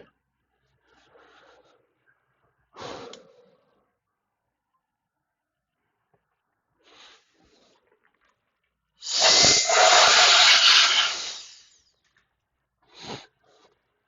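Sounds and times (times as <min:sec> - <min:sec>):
loud hiss: 0:09.0 - 0:11.8.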